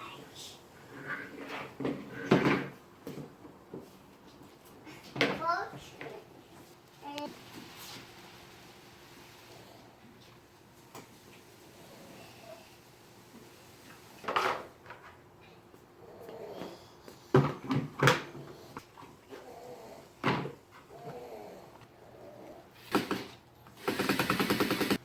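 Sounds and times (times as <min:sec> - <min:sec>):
fast even rattle: 0:22.9 - 0:25.0.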